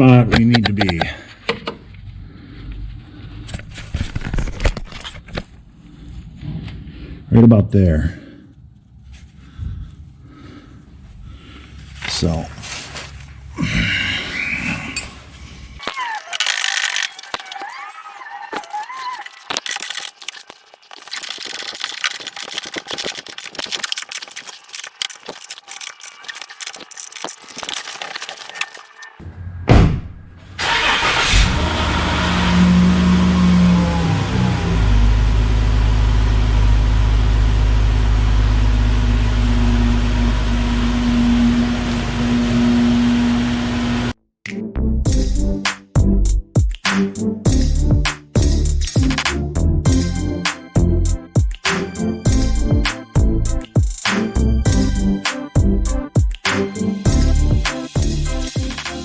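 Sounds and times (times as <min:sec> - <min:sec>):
clicking and rustling: 0:15.8 - 0:17.8, 0:18.4 - 0:29.2
car engine starting and running: 0:29.2 - 0:44.2.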